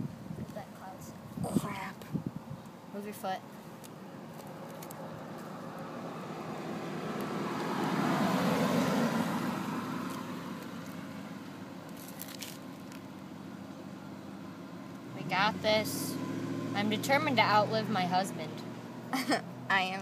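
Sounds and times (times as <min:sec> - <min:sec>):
vehicle driving past: 0:04.1 - 0:11.7, 0:13.3 - 0:19.7.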